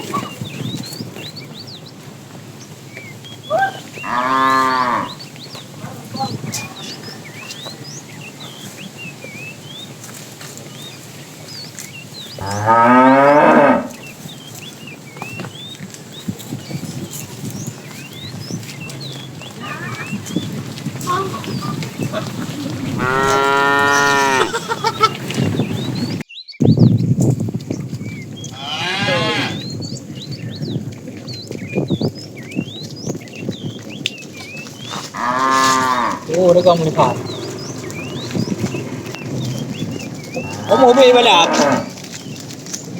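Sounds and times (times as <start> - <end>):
small birds chirping: 0.0 - 42.9
cow mooing: 3.7 - 5.2, 12.4 - 14.0, 22.2 - 24.6, 28.5 - 29.6, 34.9 - 39.7, 40.3 - 42.0.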